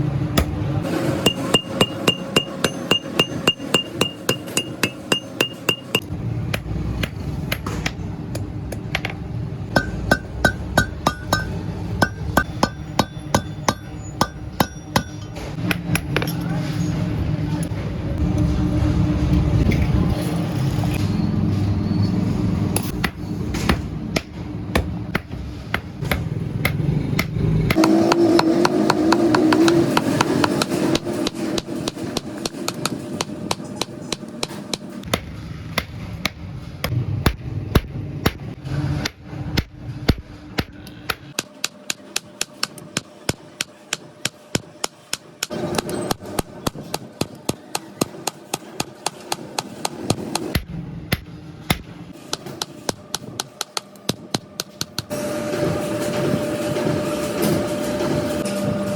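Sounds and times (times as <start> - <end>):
hammer striking steel on anvil: 0.3 - 16.5.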